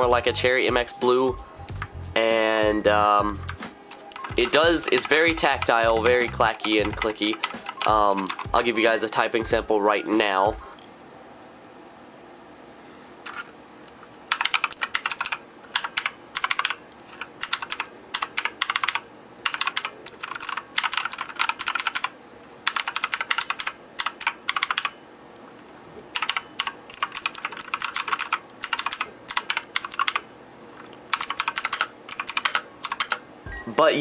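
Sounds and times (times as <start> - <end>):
mechanical keyboard typing: 3.2 - 8.7, 14.3 - 24.9, 26.1 - 30.3, 31.1 - 33.2.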